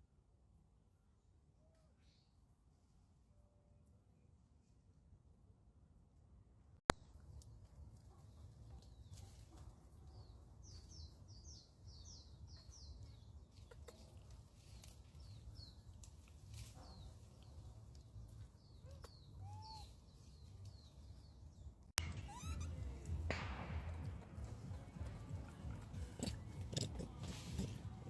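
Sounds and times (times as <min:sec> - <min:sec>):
high falling chirps: 0:22.0 - 0:23.0.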